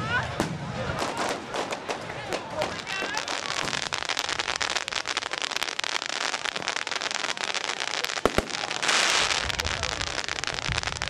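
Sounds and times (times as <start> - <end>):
fireworks crackling: 0.3 - 11.0
sharp firework bangs: 8.2 - 11.0.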